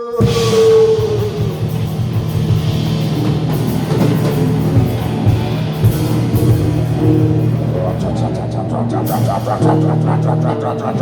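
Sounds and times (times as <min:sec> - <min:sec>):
cymbal strokes: 0:00.0 - 0:10.4
surf rock band playing: 0:00.2 - 0:08.4.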